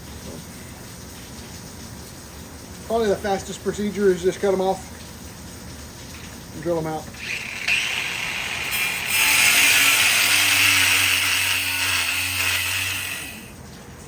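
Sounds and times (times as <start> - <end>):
power tool grinding: 7.1 - 13.6.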